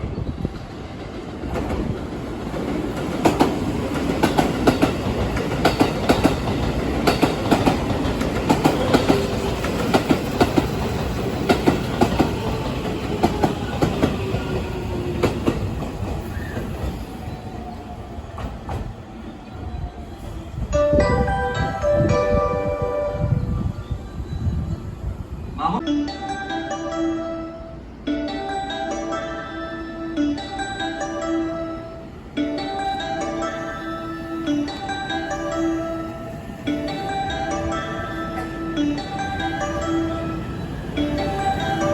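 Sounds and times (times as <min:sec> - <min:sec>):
train wheels clacking over rail joints: 0:01.1 - 0:16.9.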